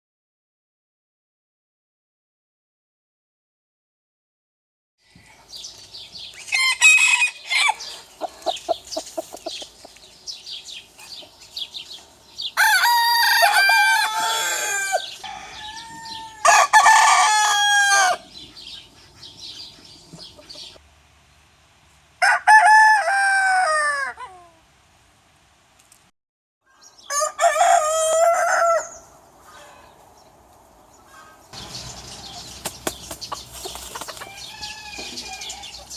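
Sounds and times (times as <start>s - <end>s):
roosters crowing: 6.4s - 9.3s, 12.4s - 18.4s, 22.2s - 24.4s, 26.8s - 30.0s, 31.1s - 35.9s
chickens clucking and chirping: 7.5s - 12.6s, 18.2s - 20.8s, 30.9s - 35.9s.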